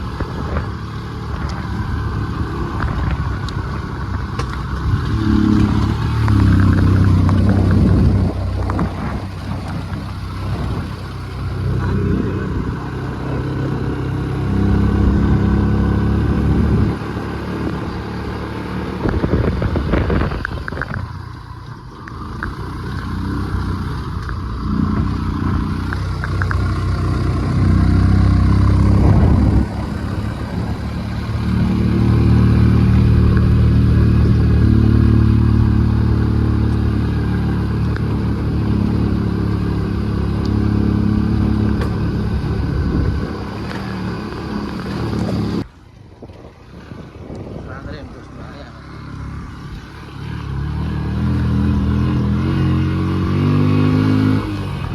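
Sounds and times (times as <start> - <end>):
vehicle engine revving: 0.0 - 45.7, 46.7 - 54.9.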